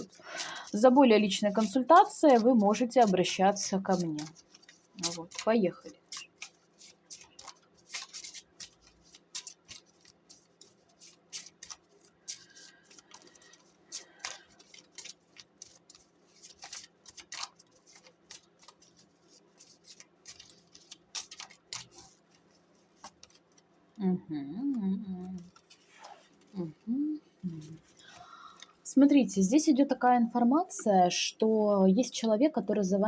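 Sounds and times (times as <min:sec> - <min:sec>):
cards being shuffled: 0:00.0 - 0:23.6.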